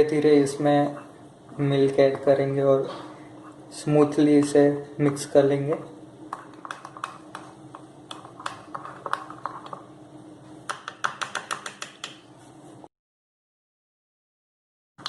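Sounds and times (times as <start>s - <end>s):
spoon stirring batter in a mug: 6.4s - 9.9s.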